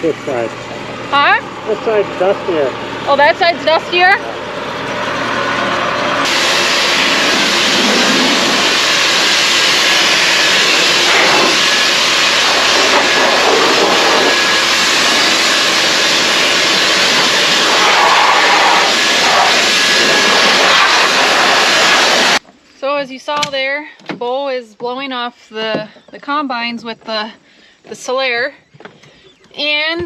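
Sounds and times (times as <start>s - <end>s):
compressed air hissing from nozzle: 6.2s - 22.4s.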